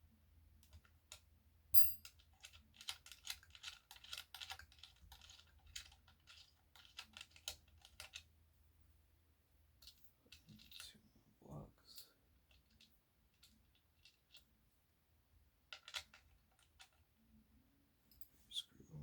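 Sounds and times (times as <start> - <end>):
sharp metallic ping: 1.8 - 2.0
small metal hardware clicking: 1.8 - 2.2.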